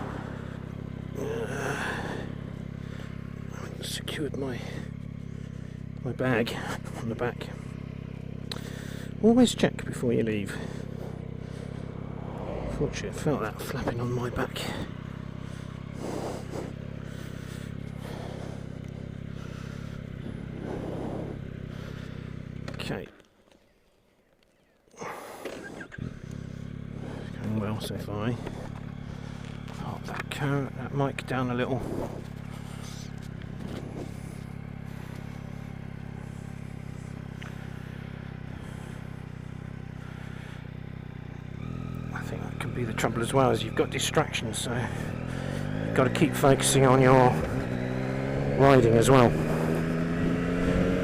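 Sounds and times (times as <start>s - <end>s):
motorcycle engine running: 0.0s - 51.0s
swells of noise: 11.6s - 14.0s.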